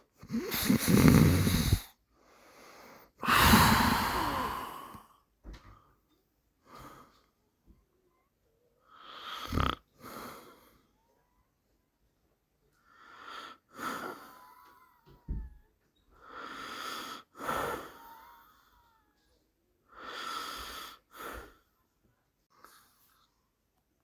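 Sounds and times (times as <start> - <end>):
slow snoring: 0.2 - 1.9, 3.2 - 5.0, 9.1 - 9.8.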